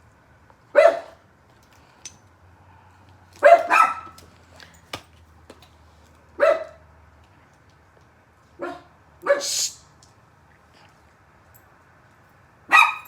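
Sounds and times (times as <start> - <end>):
dog barking: 0.7 - 1.2, 3.4 - 4.2, 6.4 - 6.8, 8.6 - 9.7, 12.7 - 13.0.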